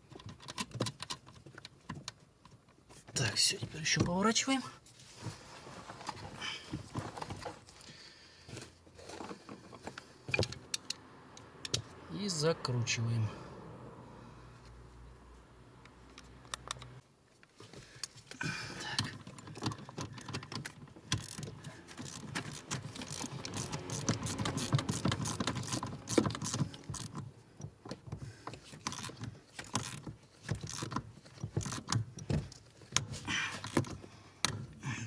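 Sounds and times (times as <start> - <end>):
ratchet wrench clicking: 21.0 - 27.2.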